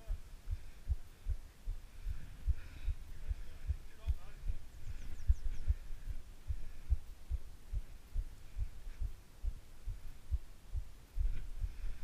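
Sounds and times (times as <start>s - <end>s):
low muffled thumps: 0.0s - 12.0s.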